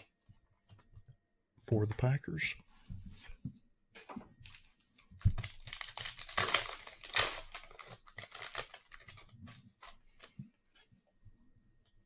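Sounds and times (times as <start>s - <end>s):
plastic wrapper tearing and crinkling: 4.4s - 10.3s.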